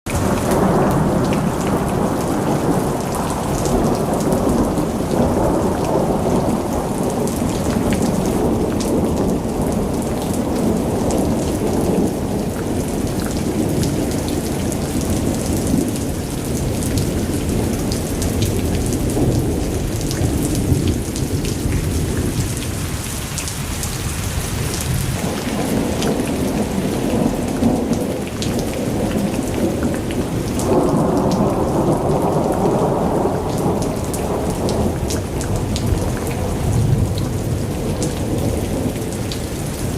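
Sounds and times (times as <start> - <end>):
heavy rain rumbling: 0.1 - 39.9
raindrops pattering on surfaces: 0.1 - 39.9.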